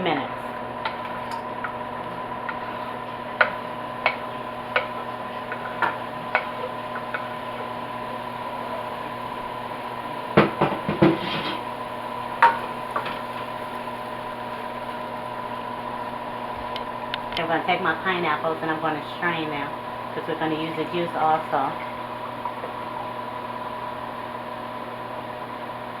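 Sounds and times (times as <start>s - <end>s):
steady hum: 0.0s - 26.0s
utensil knocking against frying pan: 0.8s - 7.9s, 10.3s - 11.7s, 12.4s - 13.5s.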